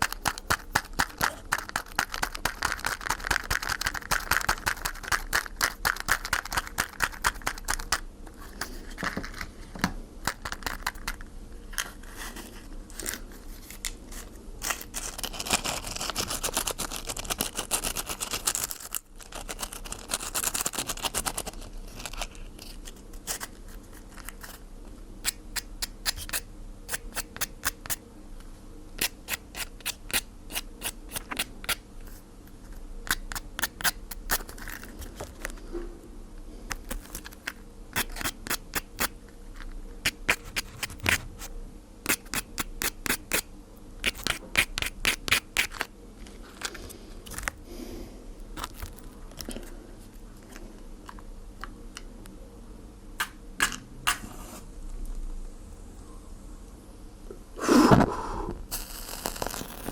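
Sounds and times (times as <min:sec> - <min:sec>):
low steady hum: 0:00.0 - 0:59.9.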